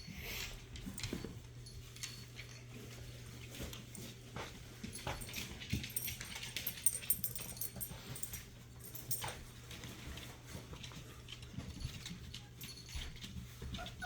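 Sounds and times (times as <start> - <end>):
puppies whimpering and squeaking: 11.9 - 14.0.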